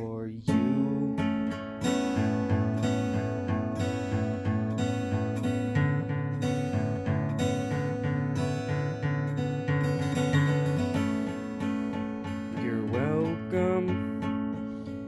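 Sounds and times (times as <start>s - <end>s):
person singing: 0.0s - 2.5s, 12.5s - 15.0s
acoustic guitar strumming: 0.0s - 15.0s.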